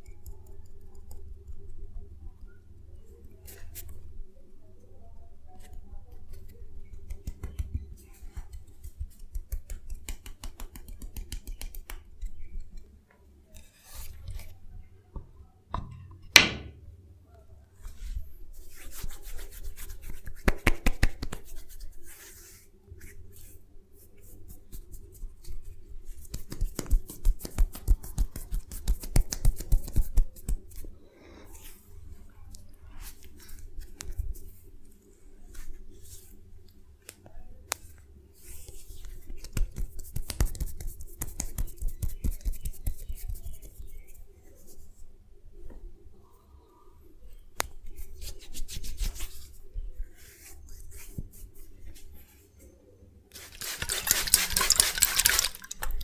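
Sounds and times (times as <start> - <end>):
rubbing on hair and skin: 6.3 - 12.6, 17.8 - 30.9, 38.4 - 45.0, 47.6 - 52.4, 53.3 - 56.0
sharp snap: 16.4 - 16.8.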